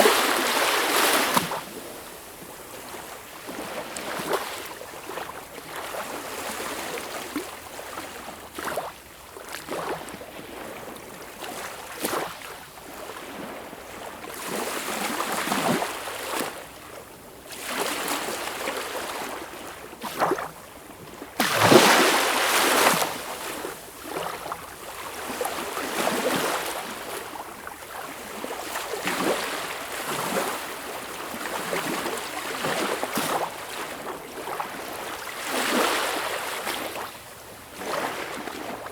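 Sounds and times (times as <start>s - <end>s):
sea waves washing and breaking: 21.4s - 23.8s.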